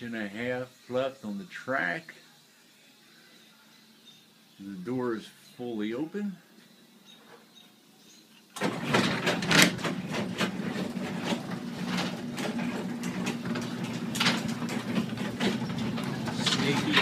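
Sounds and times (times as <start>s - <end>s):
door rollers rattling on track: 8.6s - 17.0s
garage door opener humming: 8.6s - 17.0s.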